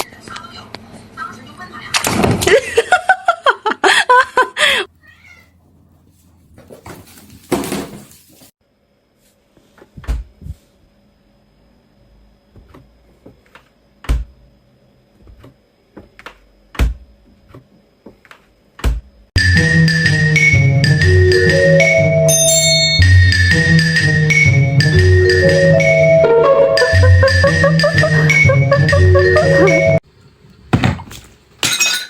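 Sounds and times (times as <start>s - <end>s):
cat meowing: 5.0s - 5.6s
sharp knocks and thumps: 30.7s - 31.4s.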